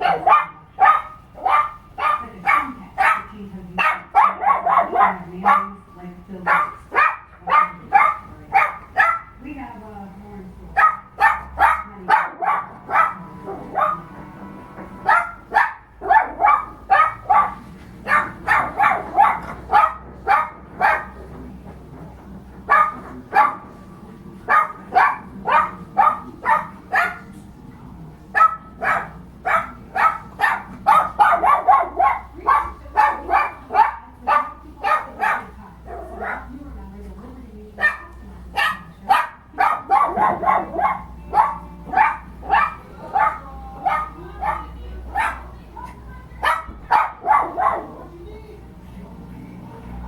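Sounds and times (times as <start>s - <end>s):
small dog barking: 0.0s - 5.8s, 6.4s - 9.4s, 10.8s - 14.2s, 15.0s - 21.3s, 22.6s - 23.8s, 24.4s - 27.3s, 28.3s - 36.6s, 37.8s - 48.2s.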